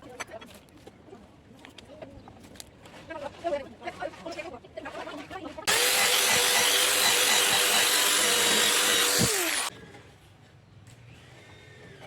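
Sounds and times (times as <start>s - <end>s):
scroll saw running: 5.7s - 9.7s.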